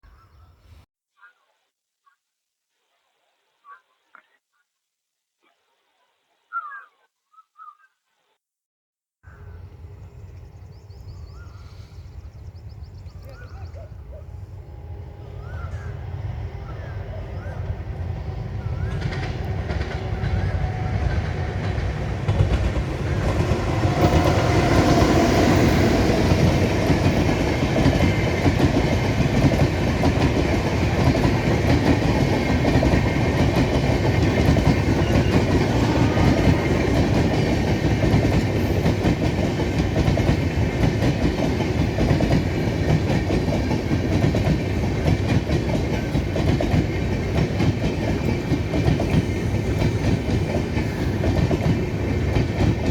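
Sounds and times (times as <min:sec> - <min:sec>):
train wheels clacking on rails: 0:16.6 - 0:52.9.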